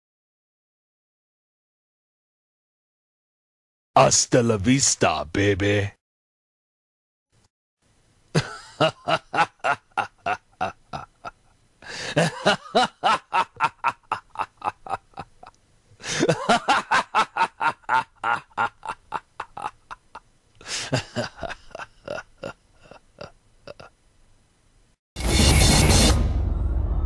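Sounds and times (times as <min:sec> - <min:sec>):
person laughing: 0:08.4 - 0:23.9.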